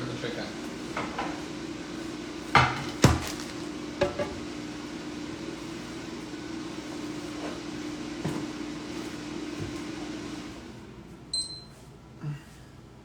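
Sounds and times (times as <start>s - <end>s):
kitchenware clunks: 2.6s - 4.4s.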